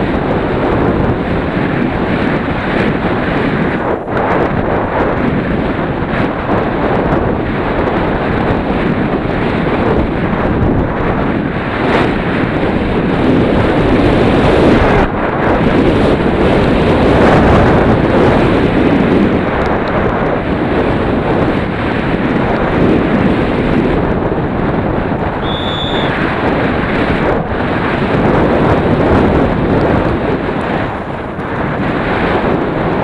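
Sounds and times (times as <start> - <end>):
wind buffeting microphone: 0.0 - 33.0
short high beep: 25.4 - 26.2.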